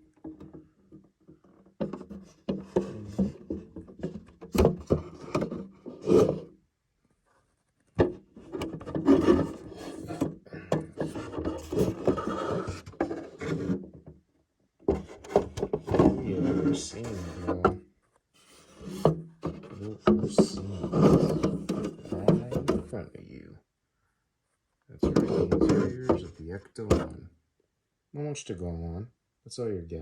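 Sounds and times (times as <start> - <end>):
plastic container rubbing and knocking: 0.0 - 6.5, 7.9 - 14.1, 14.8 - 17.8, 18.4 - 23.0, 25.0 - 27.2.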